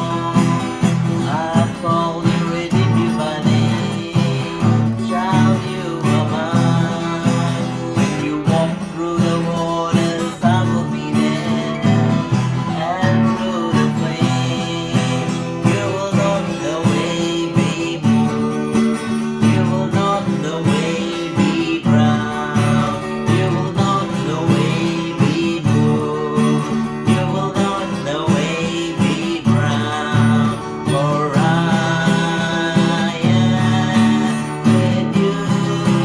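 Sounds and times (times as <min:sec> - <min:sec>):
strummed acoustic guitar music: 0:00.0 - 0:36.0.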